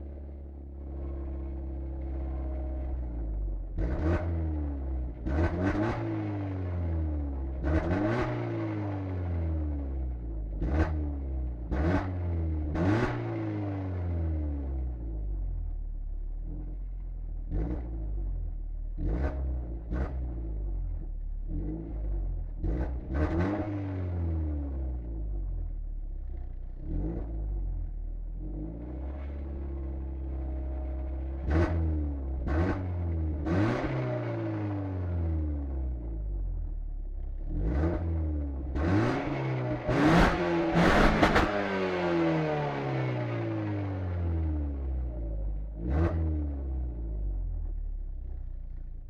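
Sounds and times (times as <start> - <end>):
car engine revving: 3.8 - 7.0, 7.6 - 9.4, 10.6 - 14.0, 18.9 - 24.8, 26.8 - 27.7, 30.2 - 48.4.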